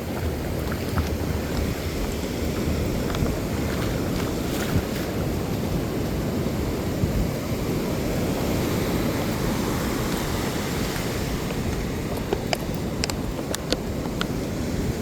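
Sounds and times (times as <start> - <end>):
ocean surf: 0.0 - 15.0
wind buffeting microphone: 0.0 - 15.0
faint ticks: 11.7 - 14.3.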